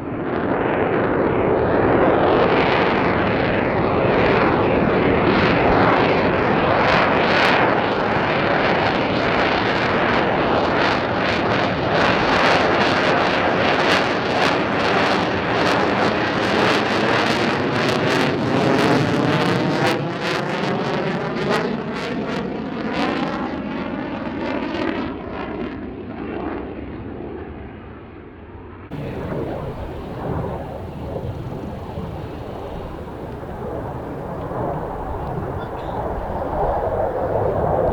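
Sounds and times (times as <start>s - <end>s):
jet roar: 28.9s - 37.9s.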